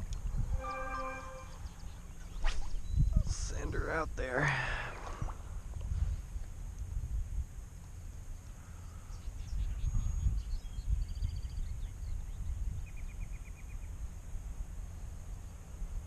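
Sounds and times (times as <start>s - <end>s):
bird trill: 0.4s - 2.4s.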